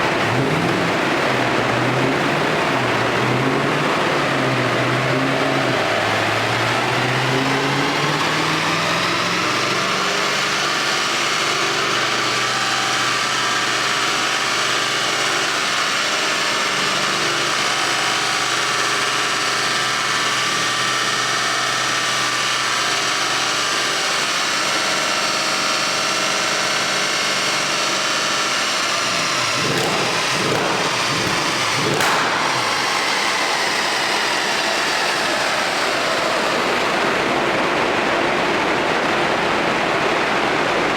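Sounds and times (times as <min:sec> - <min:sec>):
car engine revving loud: 0:00.0 - 0:22.8, 0:26.5 - 0:37.3
exhaust crack: 0:28.5 - 0:37.2.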